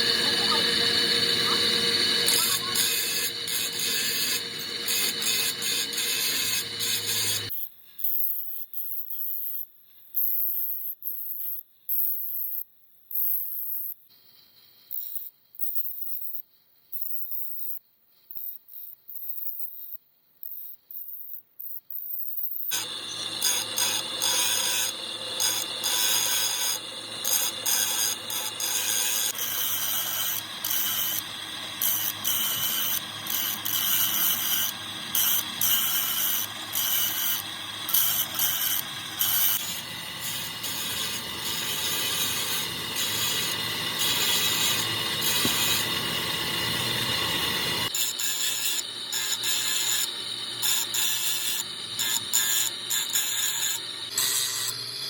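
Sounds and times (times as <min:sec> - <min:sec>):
metalworking tool clicking and scraping: 0:22.7 - 0:53.7.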